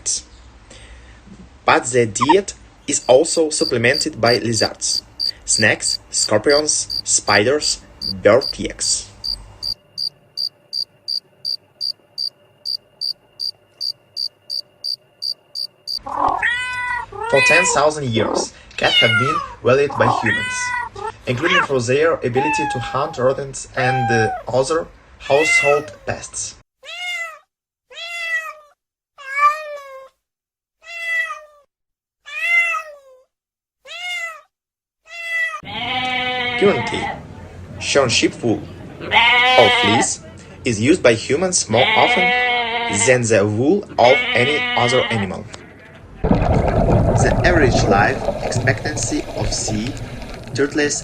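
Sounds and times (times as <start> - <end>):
insect chirping: 2.2 - 16.0
cat meowing: 16.1 - 17.8, 23.8 - 24.5, 25.2 - 26.0, 26.8 - 30.2, 30.8 - 36.9.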